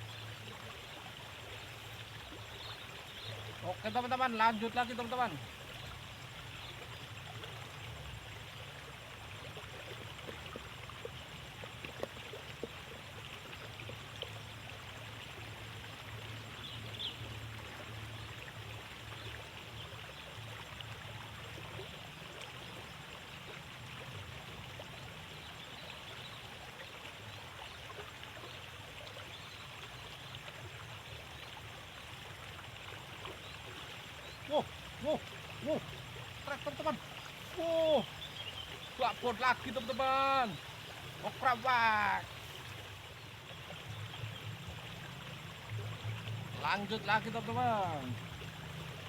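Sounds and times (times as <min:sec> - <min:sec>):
water rushing in ditch: 0:00.0 - 0:49.0
faint ticks: 0:09.8 - 0:14.4.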